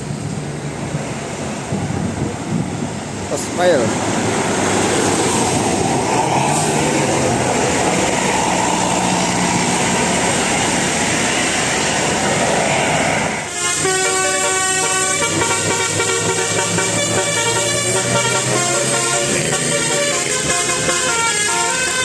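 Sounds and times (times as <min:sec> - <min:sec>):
steady noisy rumble: 0:00.0 - 0:13.8
bus horn playing melody: 0:13.5 - 0:22.0.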